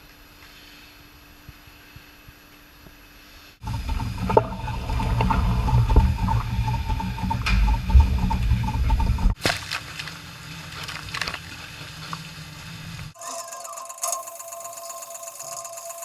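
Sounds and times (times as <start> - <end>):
faint hum: 0.0 - 9.4, 10.2 - 16.0
machinery low rumble: 3.6 - 9.4
thin steady whine: 3.6 - 9.4, 12.4 - 16.0
scattered clicks: 13.2 - 16.0.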